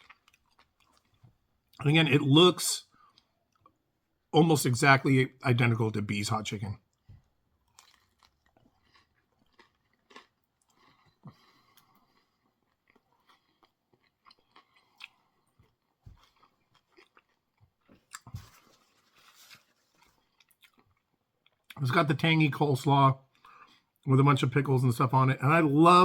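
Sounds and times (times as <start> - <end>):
person chewing crunchy food: 0.0 - 1.8, 6.9 - 21.8.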